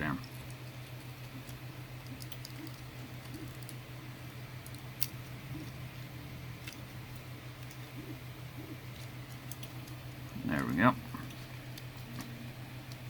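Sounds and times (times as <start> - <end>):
steady low hum: 0.0 - 13.0
plastic parts clicking: 1.4 - 3.8, 9.0 - 10.0.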